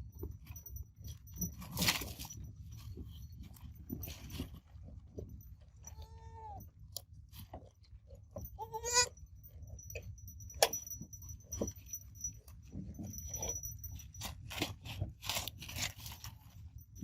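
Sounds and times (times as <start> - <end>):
goat kid bleating: 5.8 - 6.6, 8.6 - 9.2.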